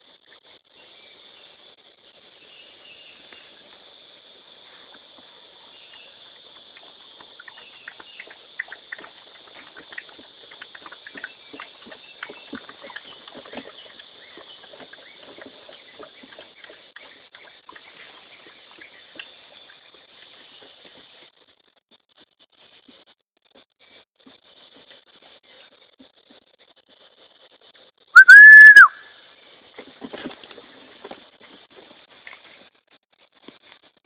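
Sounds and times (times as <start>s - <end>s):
insects chirring: 0.0s - 21.5s.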